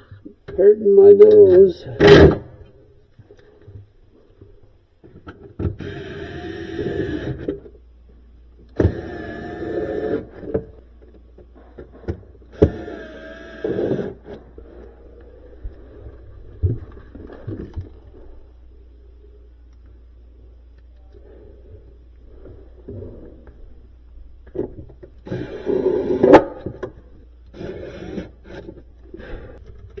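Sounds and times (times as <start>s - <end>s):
cordless drill driving screws: 5.8s - 7.5s, 8.8s - 10.3s, 12.6s - 14.2s.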